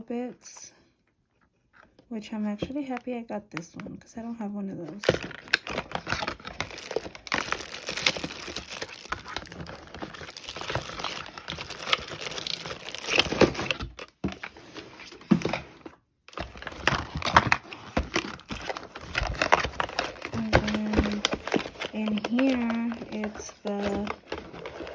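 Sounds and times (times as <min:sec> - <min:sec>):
packaging crinkling and rustling: 0:05.0 - 0:24.9.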